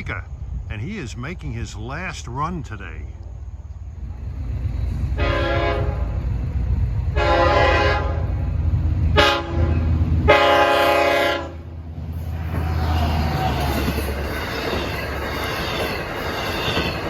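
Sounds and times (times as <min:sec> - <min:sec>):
train low rumble: 0:00.0 - 0:17.0
locomotive air horn blasts: 0:05.2 - 0:06.2, 0:07.2 - 0:08.4, 0:09.1 - 0:11.8.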